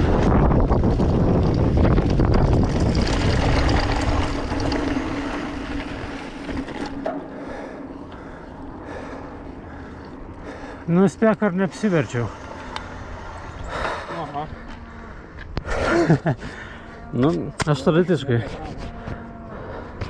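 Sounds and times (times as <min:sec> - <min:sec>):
wind rushing over microphone: 0:00.0 - 0:06.8
bike tyre noise: 0:00.0 - 0:20.0.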